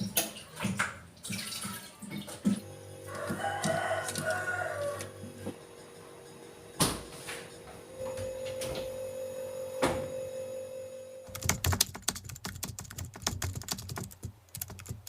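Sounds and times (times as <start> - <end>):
steady low hum: 2.6 - 11.5
rooster crowing: 3.0 - 5.6.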